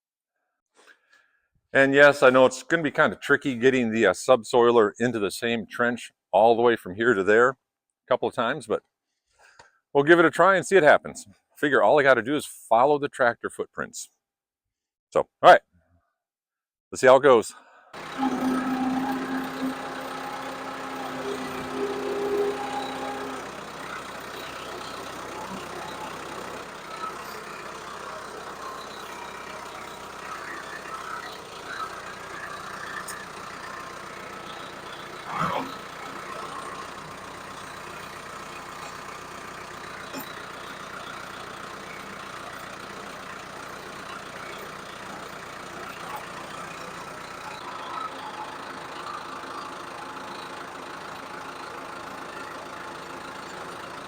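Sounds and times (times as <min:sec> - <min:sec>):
tractor engine running: 0:18.0 - 0:54.0.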